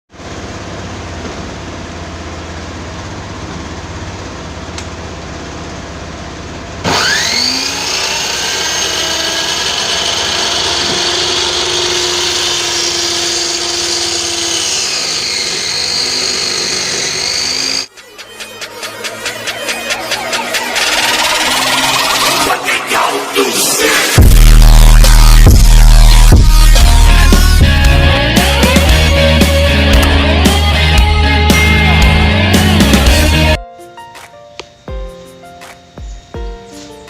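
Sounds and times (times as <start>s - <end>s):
circular saw motor whining: 6.8s - 33.6s.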